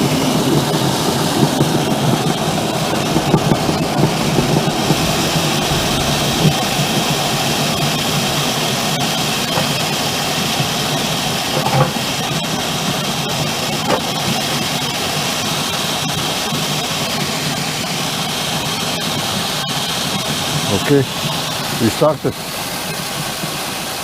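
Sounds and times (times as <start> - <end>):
grain machinery hissing: 0.0 - 16.0
short mechanical knocks: 11.5 - 12.1.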